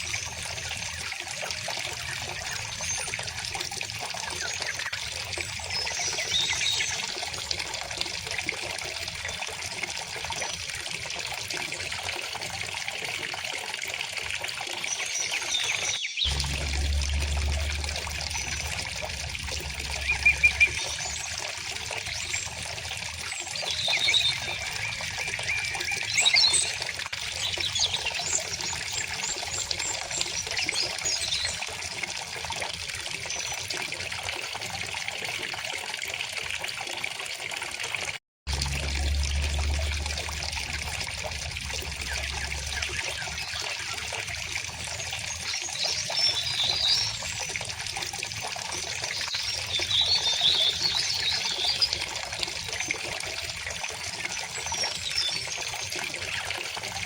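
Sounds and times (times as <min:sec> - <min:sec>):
small birds chirping: 0:14.9 - 0:22.8
low rumble: 0:16.3 - 0:22.3, 0:38.5 - 0:44.4
river water flowing: 0:16.3 - 0:26.8, 0:38.5 - 0:52.6.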